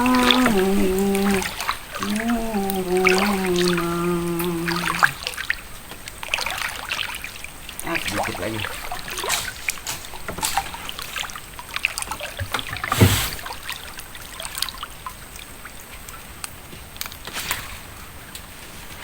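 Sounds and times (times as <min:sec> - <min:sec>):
heavy splash: 0:00.0 - 0:05.4
river water trickling: 0:00.0 - 0:17.3
small splashes and knocks: 0:00.0 - 0:18.6.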